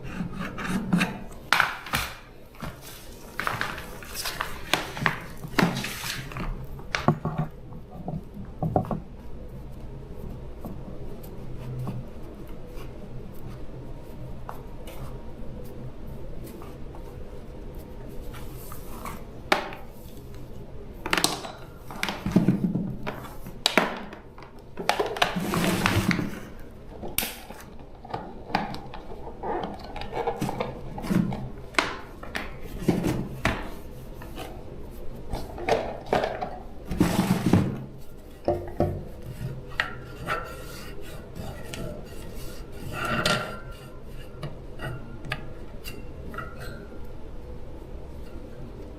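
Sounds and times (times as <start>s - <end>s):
hand tools clicking and scraping: 38.4s - 47.0s.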